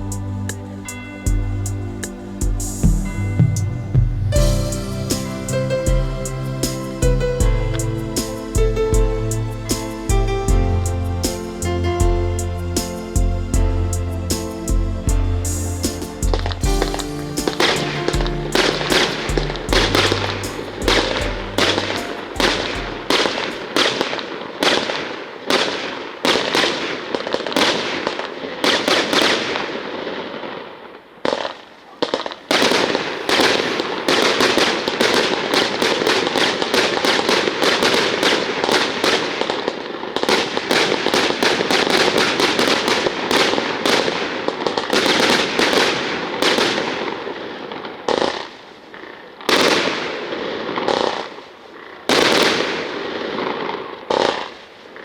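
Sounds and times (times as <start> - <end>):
fireworks crackling barrage: 0.0 - 55.0
fireworks bangs: 15.5 - 55.0.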